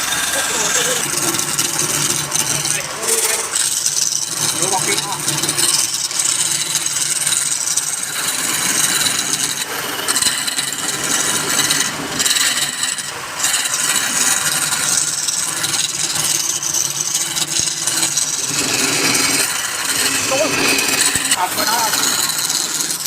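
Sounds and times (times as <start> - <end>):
tool scraping wood on lathe: 0.0 - 23.0.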